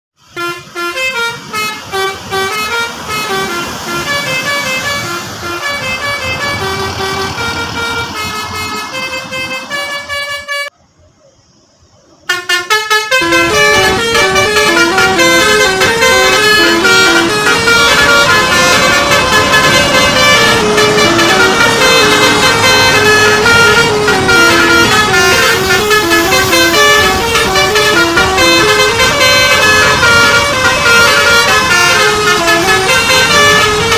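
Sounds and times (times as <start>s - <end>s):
musical air horn melody: 0.3s - 10.7s, 12.3s - 33.9s.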